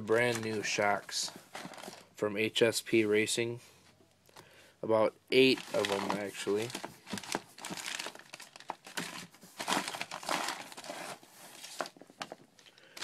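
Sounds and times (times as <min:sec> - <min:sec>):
plastic packaging crinkling: 0:00.1 - 0:02.1, 0:05.4 - 0:13.0.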